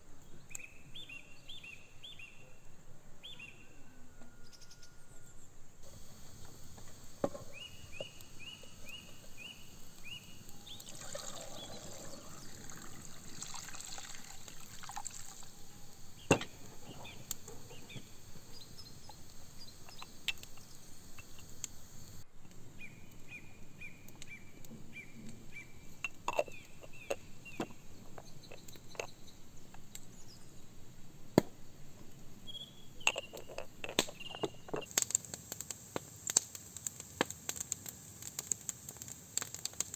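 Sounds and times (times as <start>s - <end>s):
bird chirping: 0.3s - 30.8s, 32.4s - 34.9s
water pouring and trickling: 8.8s - 21.4s
sharp clicks and knocks: 16.2s - 21.7s, 33.0s - 35.2s.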